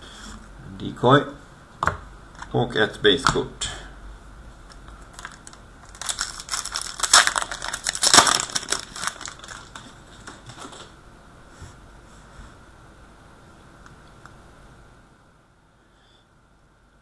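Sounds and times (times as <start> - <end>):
foil wrapper crinkling and tearing: 4.7 - 10.9.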